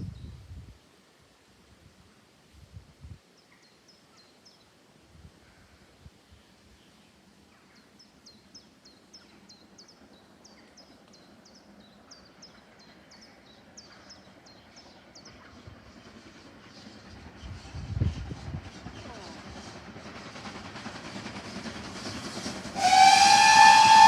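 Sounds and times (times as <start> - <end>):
diesel train approaching: 6.5 - 24.0.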